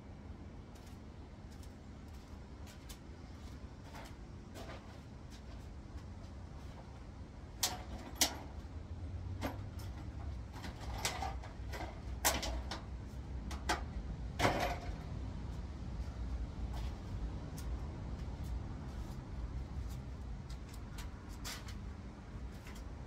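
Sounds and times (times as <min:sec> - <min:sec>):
tools clicking and knocking: 0:07.6 - 0:08.7, 0:09.3 - 0:15.2.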